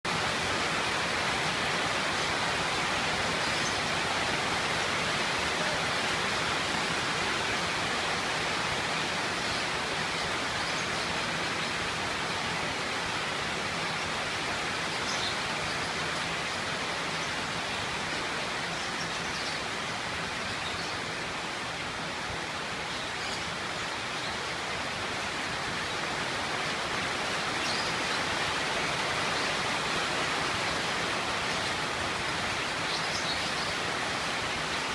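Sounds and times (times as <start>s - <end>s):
steady rain hiss: 0.0s - 34.9s.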